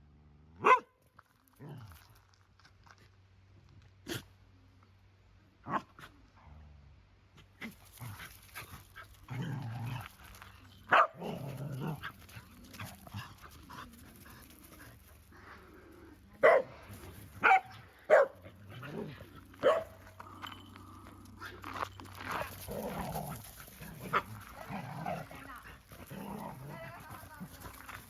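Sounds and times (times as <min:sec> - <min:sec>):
dog barking: 0:00.6 - 0:00.9, 0:10.9 - 0:11.2, 0:16.4 - 0:16.8, 0:17.4 - 0:18.4, 0:19.6 - 0:20.0.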